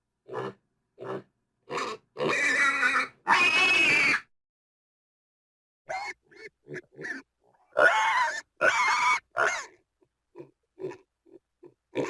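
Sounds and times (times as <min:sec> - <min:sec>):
pig grunting: 0:00.3 - 0:03.6, 0:10.4 - 0:12.0.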